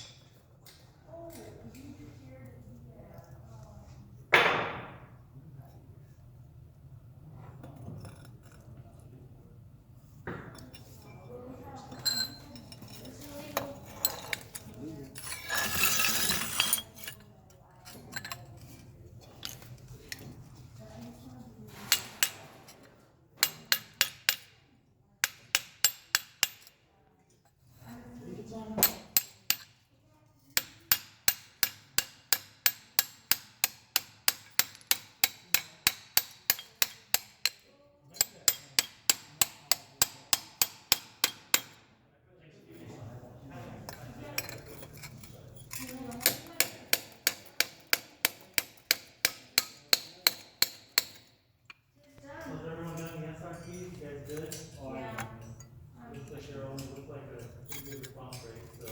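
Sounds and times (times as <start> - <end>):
hammer striking metal: 4.4 - 5.1, 25.2 - 26.7.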